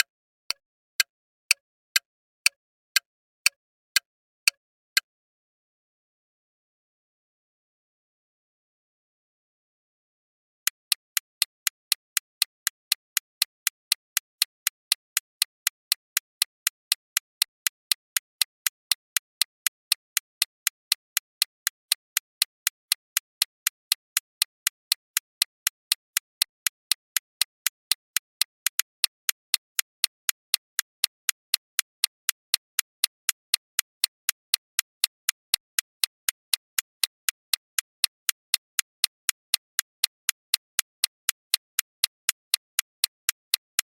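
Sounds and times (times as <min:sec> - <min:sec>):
timer ticking: 0:10.7 - 0:43.9.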